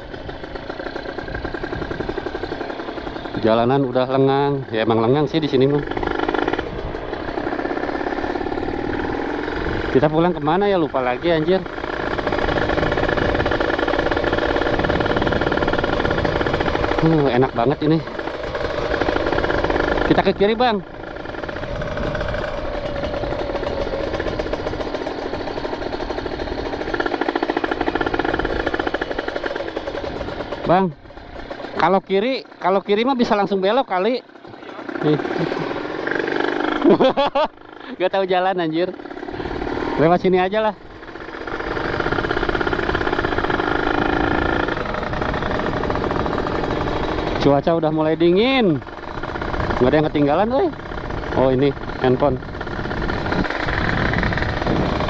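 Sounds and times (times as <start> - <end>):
two-stroke motorcycle engine running: 0.0 - 55.0.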